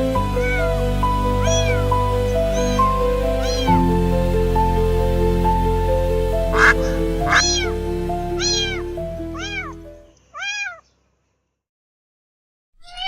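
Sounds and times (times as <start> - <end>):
soft background music: 0.0 - 10.1
kitten mewing: 6.6 - 7.8, 8.4 - 8.8, 9.4 - 9.7, 10.4 - 10.8.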